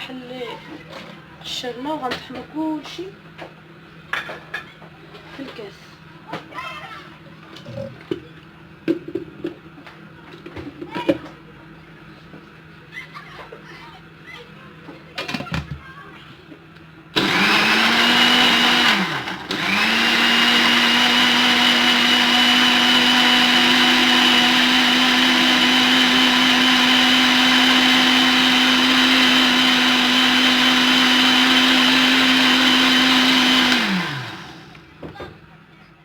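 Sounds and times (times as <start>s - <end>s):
blender motor running: 17.2s - 35.0s.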